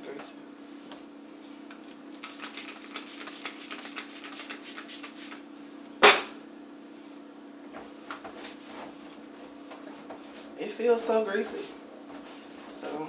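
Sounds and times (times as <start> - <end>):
steady low hum: 0.0 - 13.0
loud knock: 6.0 - 6.4.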